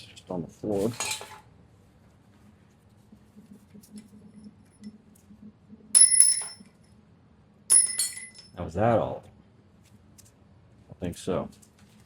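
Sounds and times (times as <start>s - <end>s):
metallic clink ringing: 6.0s - 6.7s, 7.7s - 8.6s.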